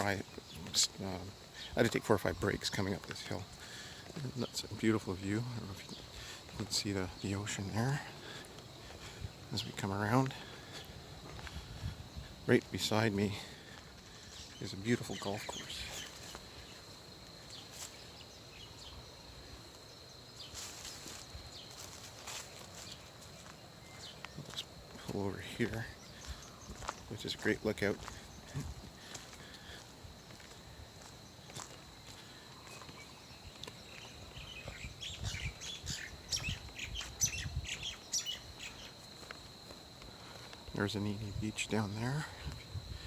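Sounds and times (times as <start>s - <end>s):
birds chirping: 0.0s - 43.0s
high insect drone: 0.0s - 43.0s
bird chirps: 14.0s - 19.2s, 32.4s - 39.1s.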